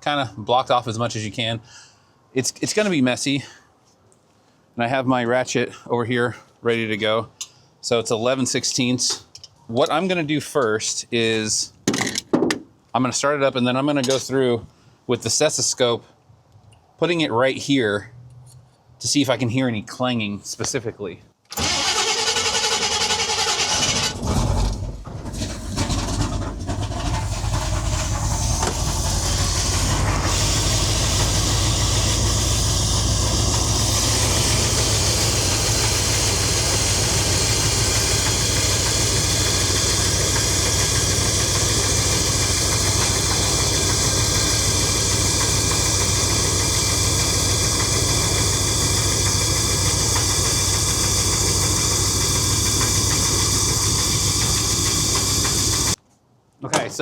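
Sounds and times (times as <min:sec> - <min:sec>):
vehicle engine starting and idling: 0:21.5 - 0:56.0.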